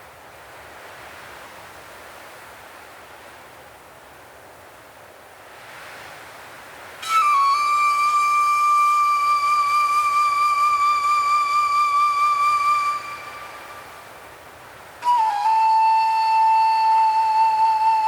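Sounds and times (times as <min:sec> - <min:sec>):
faint hiss: 0:00.0 - 0:18.0
long flute note: 0:07.0 - 0:14.4, 0:15.0 - 0:18.0.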